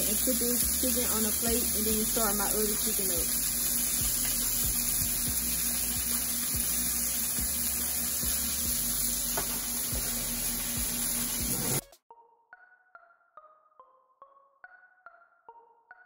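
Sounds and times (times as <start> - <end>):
chicken sizzling in hot oil: 0.0 - 11.8.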